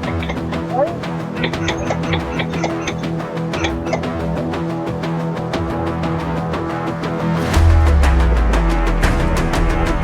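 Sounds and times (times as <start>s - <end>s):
music with steady beat: 0.0s - 10.0s
heavy bass: 7.5s - 10.0s.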